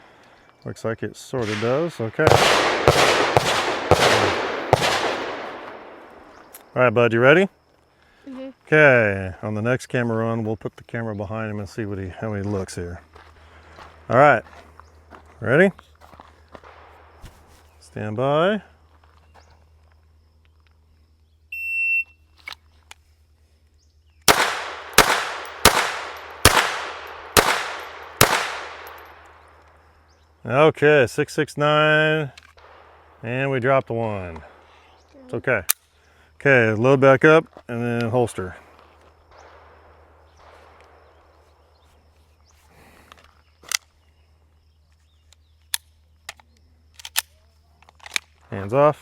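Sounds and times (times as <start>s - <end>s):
handgun shots with echo: 1.4s - 6.5s, 24.3s - 29.2s
handgun clicks: 24.3s - 29.8s, 45.3s - 48.4s.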